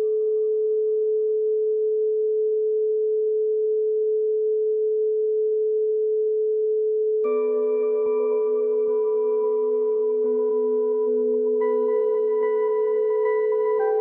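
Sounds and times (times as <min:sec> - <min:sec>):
steady singing bowl tone: 0:00.0 - 0:03.3, 0:07.2 - 0:14.0
ringing tone with overtones: 0:07.3 - 0:14.0.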